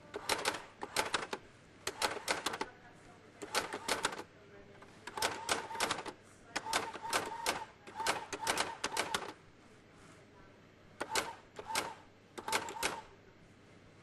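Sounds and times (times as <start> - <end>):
electronic typewriter clacking: 0.2 - 2.7, 3.4 - 4.2, 5.1 - 9.4, 11.0 - 13.1.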